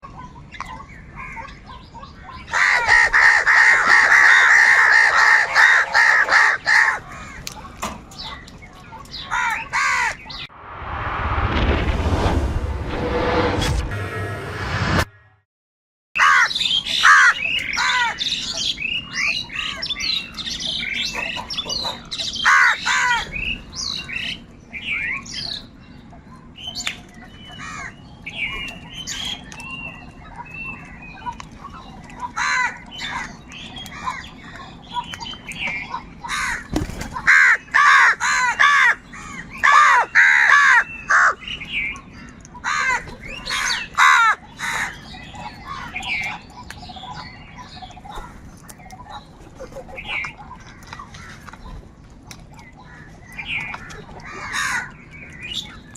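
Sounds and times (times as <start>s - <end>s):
crows cawing: 2.5s - 7.6s, 9.2s - 10.3s, 16.2s - 18.2s, 22.4s - 23.4s, 27.6s - 28.0s, 32.3s - 34.3s, 36.2s - 41.4s, 42.6s - 45.1s, 52.9s - 55.0s.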